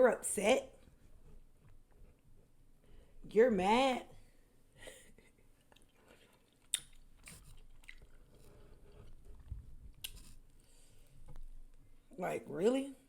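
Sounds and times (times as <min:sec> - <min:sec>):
person chewing food: 0:05.6 - 0:11.2
mouth smacks: 0:05.7 - 0:08.1.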